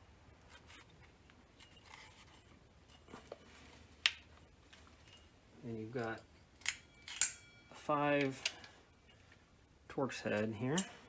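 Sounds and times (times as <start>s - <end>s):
sharp click: 6.6s - 7.5s.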